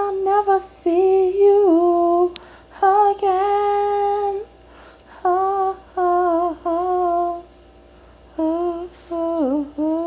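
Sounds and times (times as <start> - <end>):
woman humming: 8.4 - 10.0.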